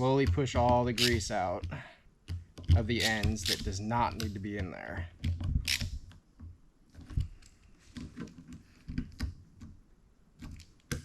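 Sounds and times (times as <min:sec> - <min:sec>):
wrench clicking on metal: 0:00.8 - 0:01.4, 0:03.0 - 0:04.4, 0:05.6 - 0:06.0.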